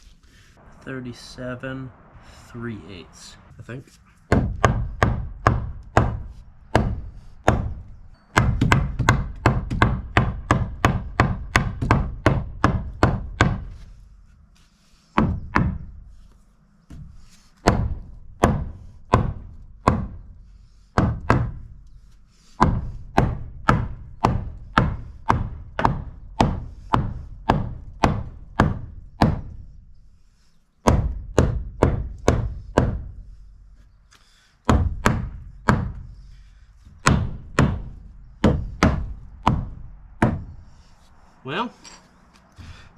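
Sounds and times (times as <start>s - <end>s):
hammer pounding on wood: 4.3s - 14.0s, 15.2s - 16.0s, 16.9s - 21.8s, 22.5s - 29.7s, 30.8s - 33.4s, 34.6s - 40.7s.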